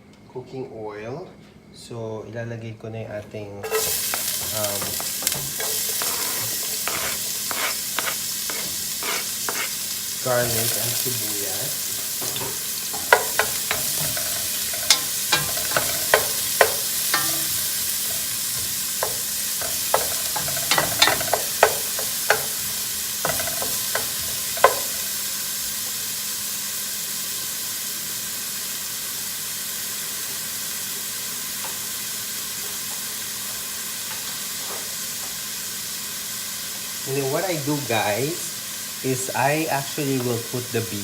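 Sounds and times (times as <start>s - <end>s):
garlic and onion sizzling in oil: 3.6s - 41.0s
utensil clicking against pan: 3.7s - 9.7s, 11.9s - 25.1s.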